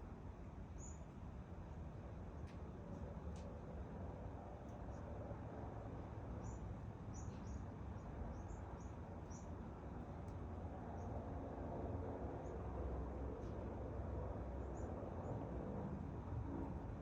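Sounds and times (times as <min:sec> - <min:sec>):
small birds chirping: 0:06.4 - 0:09.6.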